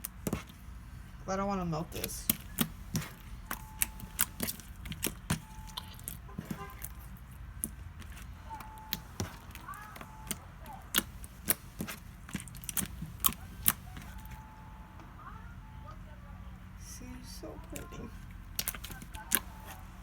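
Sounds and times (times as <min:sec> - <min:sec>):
slime popping and clicking: 0:02.2 - 0:14.4, 0:18.5 - 0:19.8.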